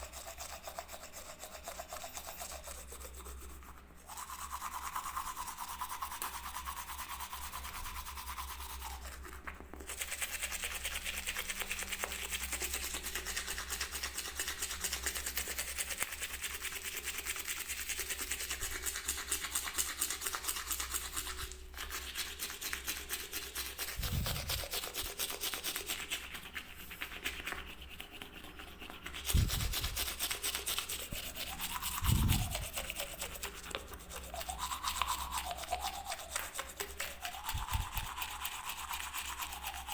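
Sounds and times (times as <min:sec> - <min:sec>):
toothbrush scrubbing: 0:00.0 - 0:39.9.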